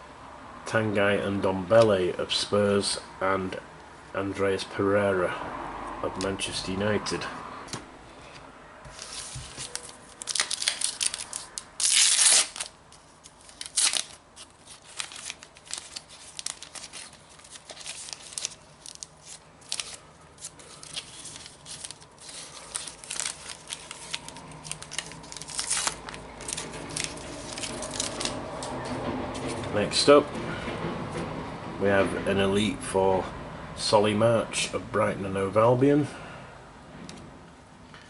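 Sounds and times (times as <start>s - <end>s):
cards rustling and clicking: 7.7s - 29.7s
card packet wrapper tearing: 8.9s - 28.7s
wrapper crinkling: 8.9s - 28.8s.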